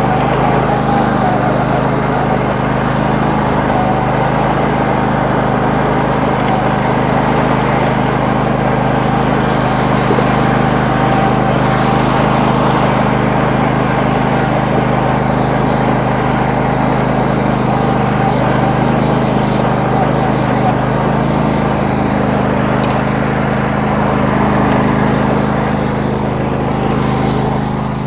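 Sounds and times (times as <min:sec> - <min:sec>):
lawn tractor engine running: 0:00.0 - 0:28.0.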